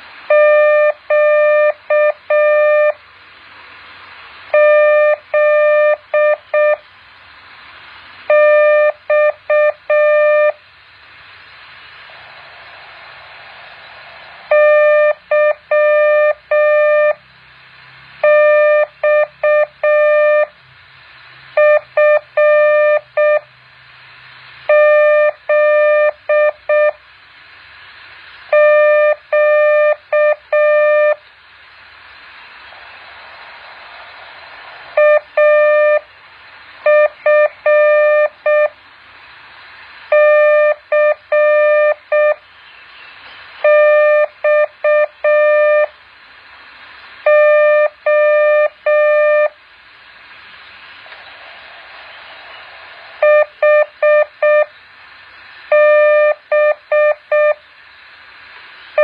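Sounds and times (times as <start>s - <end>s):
hiss: 0.0s - 59.0s
morse code beeps: 0.3s - 3.0s, 14.5s - 17.2s, 35.0s - 36.0s, 36.8s - 38.7s, 40.1s - 42.4s, 43.6s - 45.9s, 47.3s - 49.5s, 53.2s - 54.7s, 55.7s - 57.6s.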